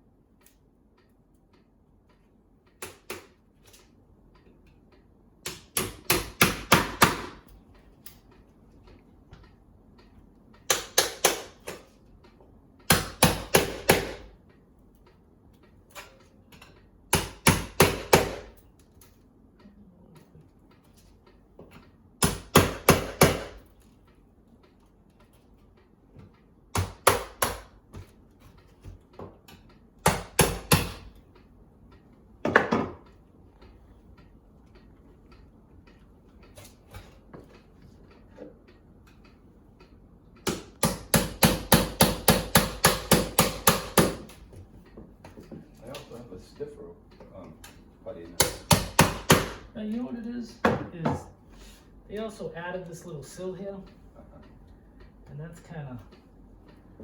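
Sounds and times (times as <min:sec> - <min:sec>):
hammer tapping on wood: 0:10.7 - 0:11.9, 0:12.8 - 0:14.3, 0:17.1 - 0:18.6, 0:21.6 - 0:23.6, 0:30.0 - 0:31.2, 0:40.4 - 0:45.7, 0:48.4 - 0:49.7.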